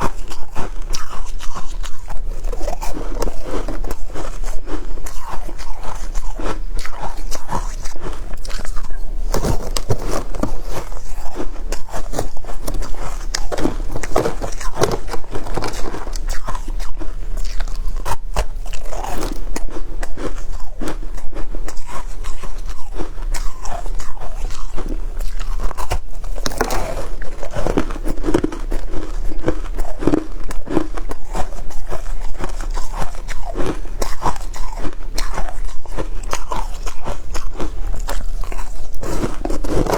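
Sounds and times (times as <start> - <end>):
ice crunching being chewed: 0.0 - 39.9.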